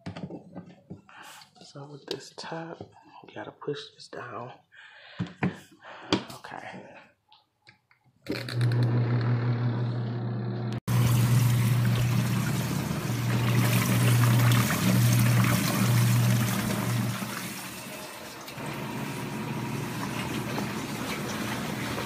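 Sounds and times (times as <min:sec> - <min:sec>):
washing machine motor hum: 0:08.4 - 0:22.0
water spraying and trickling: 0:10.9 - 0:22.0.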